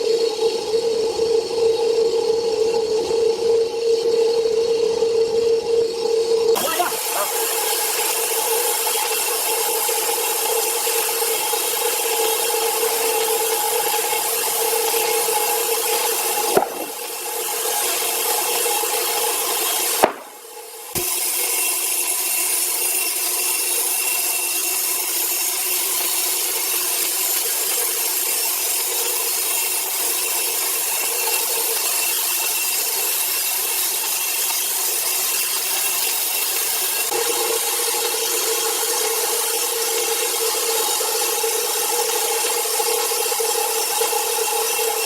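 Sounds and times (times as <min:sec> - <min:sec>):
power saw cutting log: 0:01.7 - 0:45.0
constant hum: 0:16.5 - 0:17.2.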